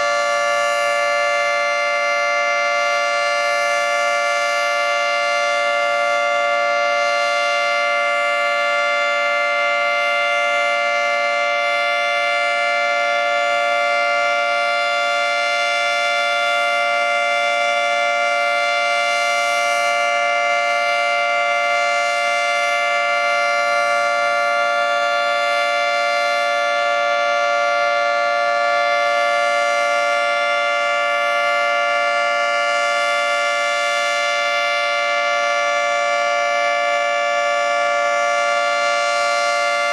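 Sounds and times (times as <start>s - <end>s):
dual-tone warning siren: 0.0s - 39.9s.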